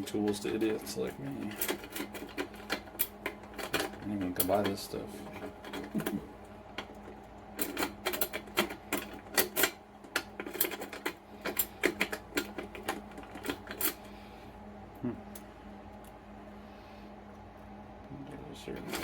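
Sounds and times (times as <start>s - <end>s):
faint steady hum: 0.0s - 19.0s
lock picks clicking and scraping: 1.3s - 6.2s, 6.8s - 14.0s.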